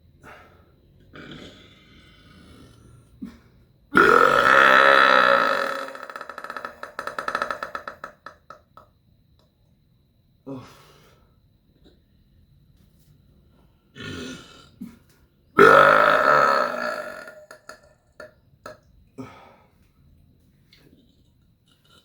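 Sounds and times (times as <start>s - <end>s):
long loud burp: 1.1s - 8.7s, 14.0s - 15.0s, 15.6s - 18.8s.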